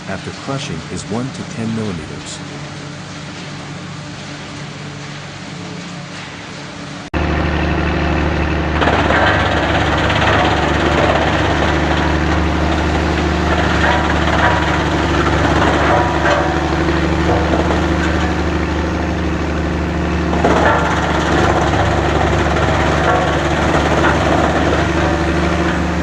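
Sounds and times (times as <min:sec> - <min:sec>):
machinery motor hum: 0:07.2 - 0:26.0
wood crackling and snapping: 0:08.8 - 0:26.0.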